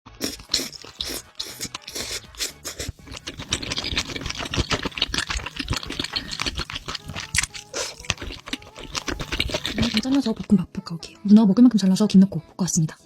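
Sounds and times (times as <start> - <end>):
mouth chewing wet clicks: 0.2 - 10.6.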